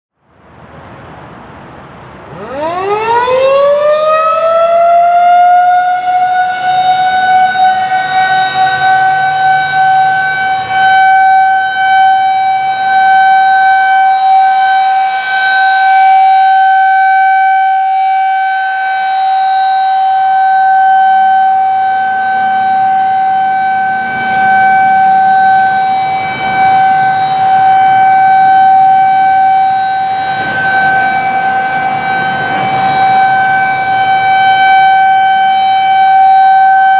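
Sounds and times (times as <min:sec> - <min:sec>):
rotating siren wailing: 0:02.2 - 0:36.9.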